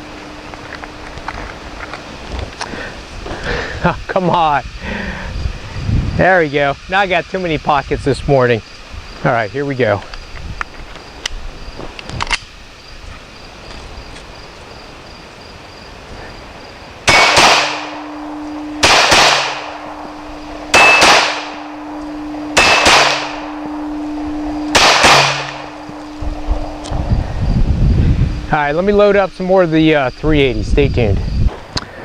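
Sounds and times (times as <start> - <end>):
pistol shots: 17.1 - 18.2, 18.8 - 19.8, 20.7 - 21.6, 22.6 - 23.6, 24.7 - 25.8.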